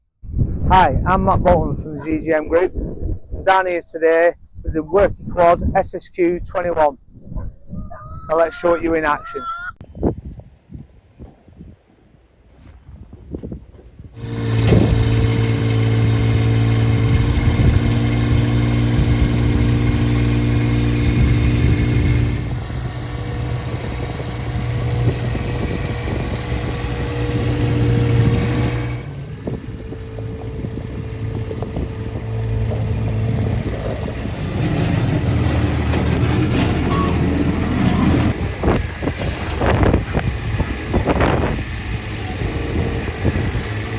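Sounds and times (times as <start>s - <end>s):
skid steer engine working: 14.2s - 43.9s.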